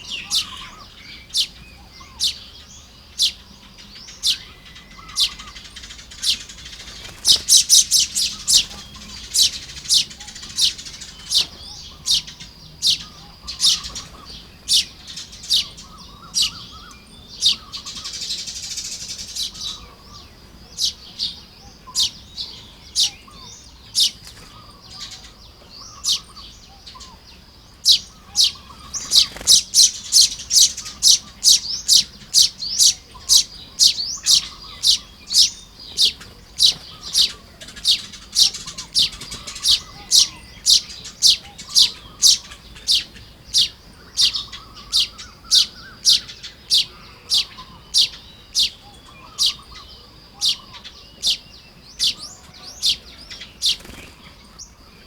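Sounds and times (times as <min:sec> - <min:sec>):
faint bird chattering: 0:00.0 - 0:55.0
birds calling short high chips: 0:27.9 - 0:54.1.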